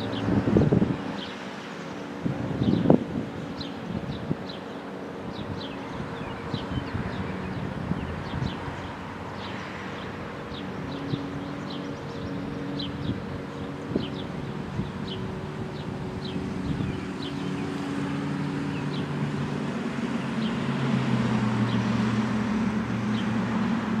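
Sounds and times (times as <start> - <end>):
vehicle engine humming: 0.0 - 24.0
bird chirping: 3.5 - 19.2.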